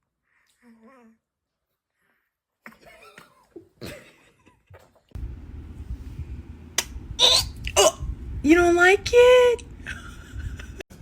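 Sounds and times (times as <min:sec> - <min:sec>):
low background rumble: 0:05.2 - 0:10.8
baby sneeze: 0:07.2 - 0:08.0.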